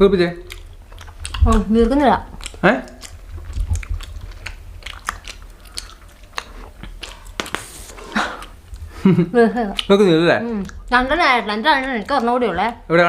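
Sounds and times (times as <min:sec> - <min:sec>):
wet chewing of bubble gum: 0:00.4 - 0:12.9
breathy puff: 0:07.3 - 0:09.1.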